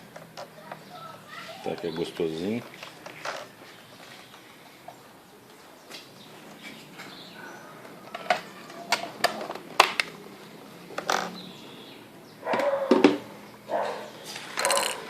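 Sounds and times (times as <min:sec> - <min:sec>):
hard plastic items clicking: 0:07.8 - 0:10.2.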